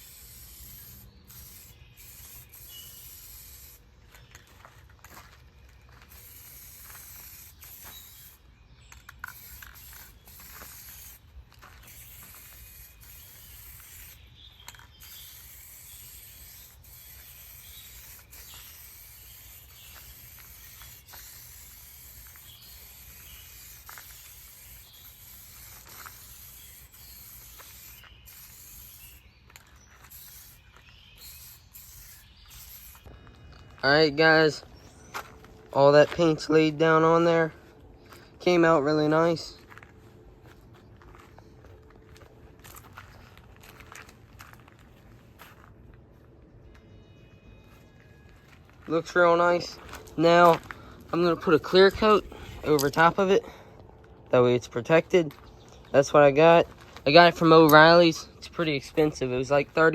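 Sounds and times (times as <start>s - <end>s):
aerosol spray can hissing: 0.0s - 3.8s, 6.0s - 8.4s, 9.2s - 29.3s, 30.0s - 33.1s.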